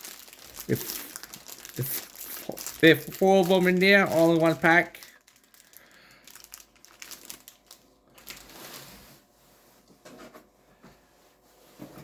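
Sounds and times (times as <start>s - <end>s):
plastic packaging crinkling: 0.0s - 9.0s.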